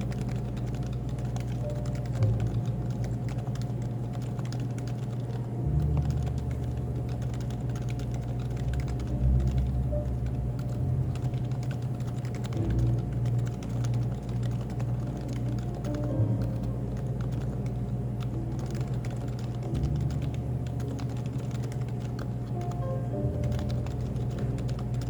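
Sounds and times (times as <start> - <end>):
keyboard typing clicks: 0.0 - 25.0
low bass line: 8.4 - 14.3, 15.0 - 21.5, 22.3 - 25.0.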